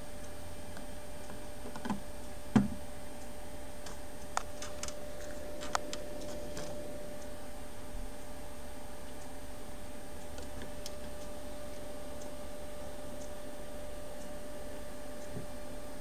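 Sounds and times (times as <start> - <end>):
sharp clicks and knocks: 1.3 - 2.8, 3.8 - 6.8.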